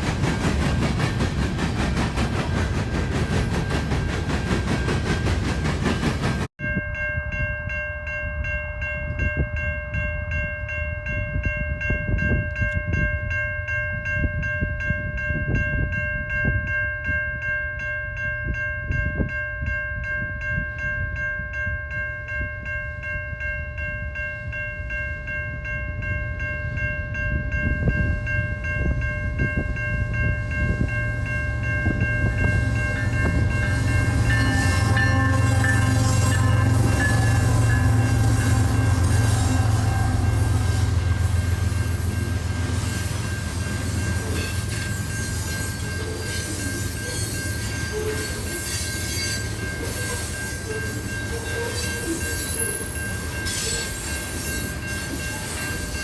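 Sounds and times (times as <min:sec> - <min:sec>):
train rolling by: 0:00.0 - 0:06.8, 0:23.7 - 0:56.0.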